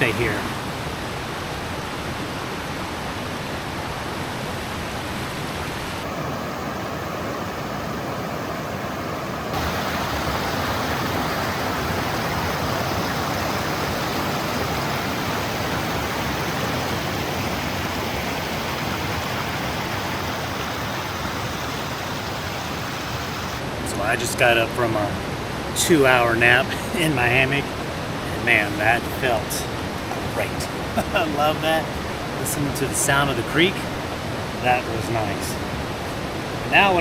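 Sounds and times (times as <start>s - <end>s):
water rushing over small waterfalls: 0.0s - 23.8s.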